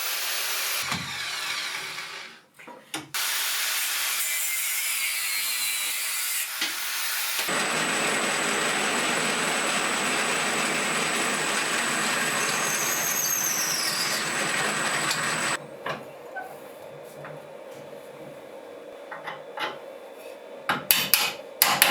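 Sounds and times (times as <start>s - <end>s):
power tool grinding material: 6.4s - 15.6s.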